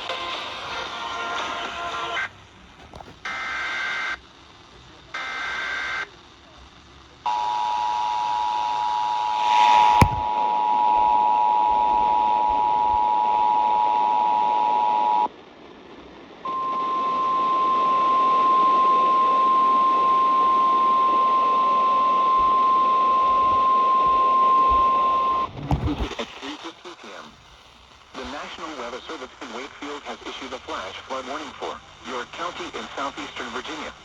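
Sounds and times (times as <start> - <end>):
radio static hiss: 0.0 - 10.8, 25.2 - 34.0.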